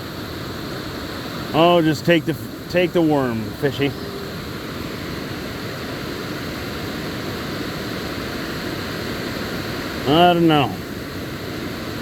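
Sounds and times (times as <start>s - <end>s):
water rushing over a dam: 0.0s - 12.0s.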